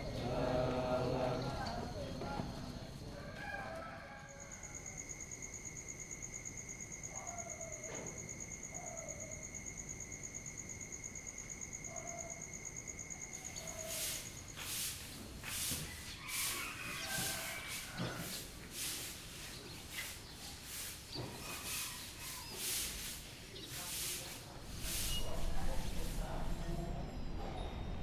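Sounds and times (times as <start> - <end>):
insects trilling: 0.0 - 28.0
low steady insect tone: 0.0 - 28.0
distant dog barks: 7.0 - 8.0, 8.7 - 9.5, 11.8 - 12.5, 13.6 - 14.1
broom sweeping: 13.4 - 27.0.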